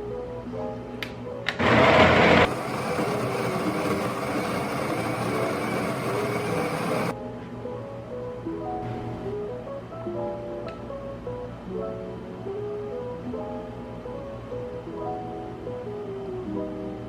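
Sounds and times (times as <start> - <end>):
kitchen appliance motor running: 1.6 - 7.1.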